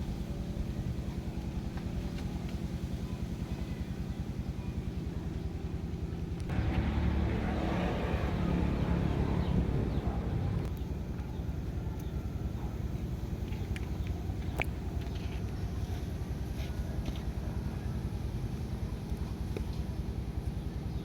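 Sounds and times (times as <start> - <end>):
small engine running: 6.5 - 11.4.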